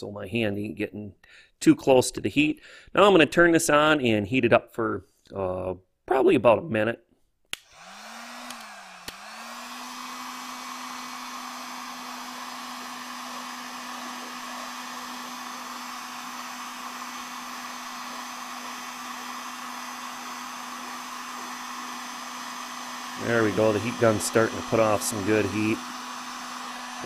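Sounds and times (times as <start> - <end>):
heat gun switch click: 7.5 - 9.2
heat gun motor whine: 7.6 - 27.0.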